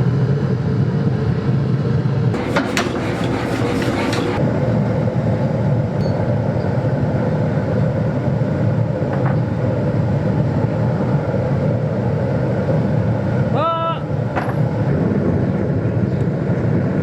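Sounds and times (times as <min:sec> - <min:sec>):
low mechanical rumble: 0:02.4 - 0:04.5.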